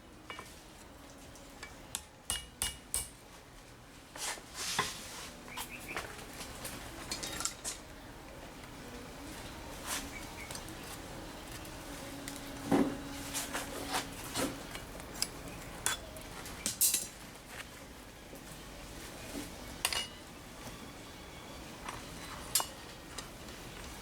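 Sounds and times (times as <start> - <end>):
metal tools clinking: 7.1 - 7.8, 15.1 - 17.2.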